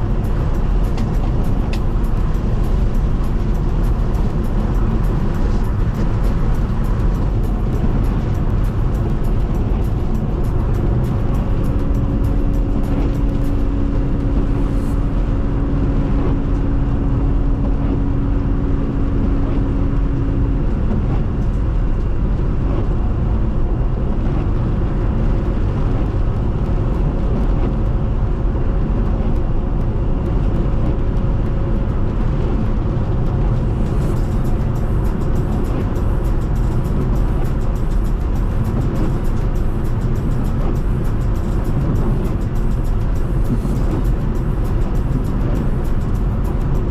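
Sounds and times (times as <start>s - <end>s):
car road and engine noise: 0.0s - 46.9s
steady hum: 0.0s - 46.9s.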